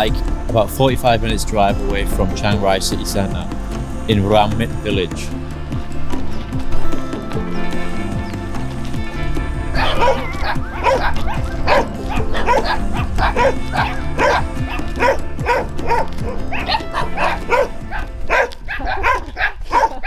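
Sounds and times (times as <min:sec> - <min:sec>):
sustained low chords: 0:00.0 - 0:18.7.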